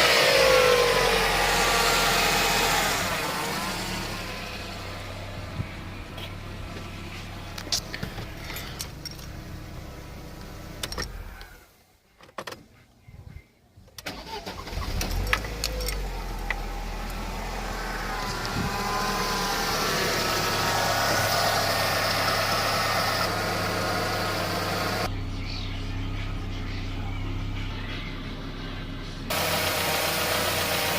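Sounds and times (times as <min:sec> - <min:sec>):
car engine idling: 0:00.0 - 0:11.6, 0:14.1 - 0:30.9.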